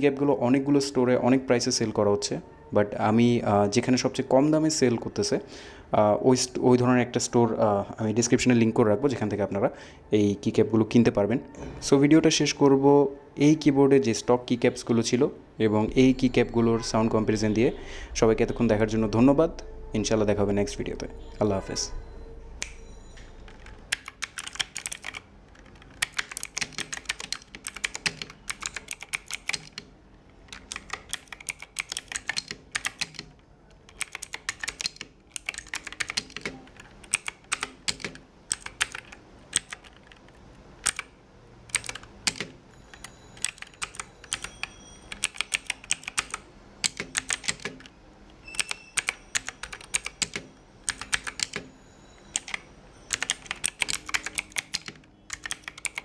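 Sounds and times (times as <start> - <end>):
mechanical keyboard clicks: 23.4 - 29.9, 30.5 - 47.9, 48.5 - 51.7, 52.3 - 56.0.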